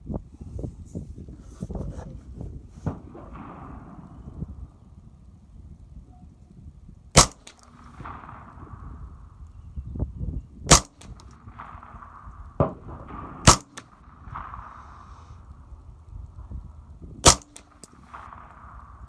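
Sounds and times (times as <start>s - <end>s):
wind noise on microphone: 0.0s - 19.0s
rifle shots: 2.8s - 5.1s, 7.2s - 9.4s, 10.7s - 15.8s, 17.2s - 19.0s.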